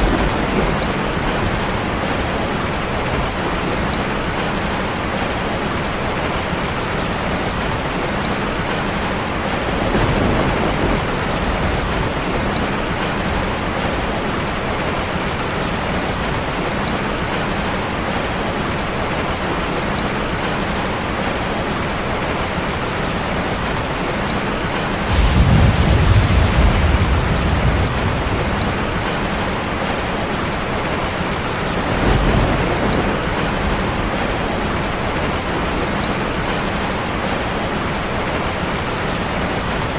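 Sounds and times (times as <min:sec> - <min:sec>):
thunder rumbling: 0:00.0 - 0:05.5, 0:09.5 - 0:15.3, 0:25.0 - 0:37.4
heavy rain hissing: 0:00.0 - 0:39.9.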